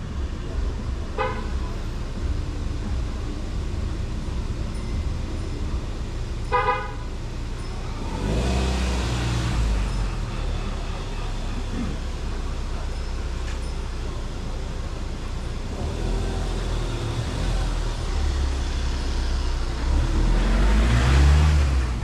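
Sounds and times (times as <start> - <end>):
low street rumble: 0.0 - 22.0
vehicle horn toots: 1.2 - 1.7, 6.5 - 7.1
vehicle passing close: 15.7 - 22.0.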